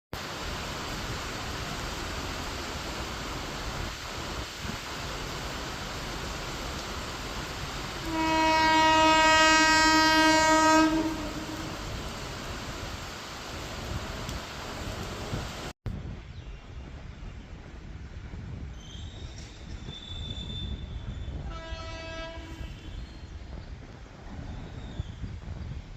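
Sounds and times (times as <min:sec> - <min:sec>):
rain: 0:00.2 - 0:15.8, 0:18.6 - 0:25.9
running train rushing: 0:00.2 - 0:25.9
train horn blast: 0:08.0 - 0:12.0, 0:21.4 - 0:23.0.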